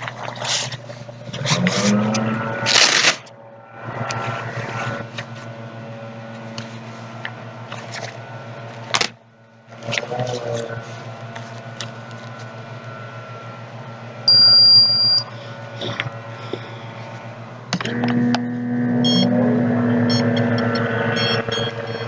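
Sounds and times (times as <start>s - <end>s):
cuff pump motor humming: 0.0s - 22.0s
high electronic beep: 14.3s - 15.3s, 18.9s - 22.0s.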